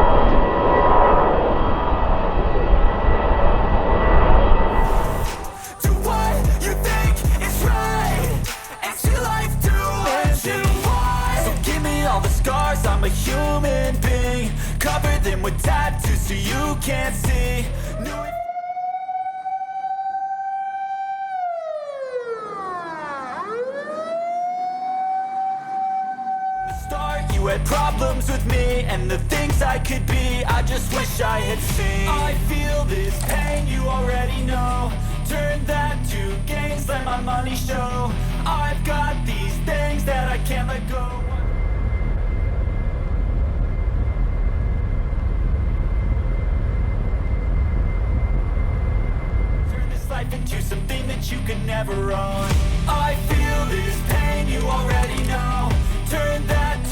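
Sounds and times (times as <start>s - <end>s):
emergency vehicle siren: 17.4s - 27.0s.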